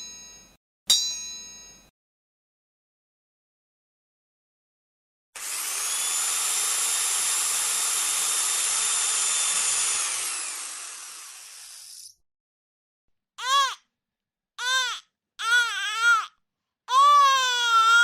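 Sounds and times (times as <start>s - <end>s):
electric drill whining: 5.4s - 12.1s
baby crying: 13.4s - 13.8s, 14.6s - 18.0s.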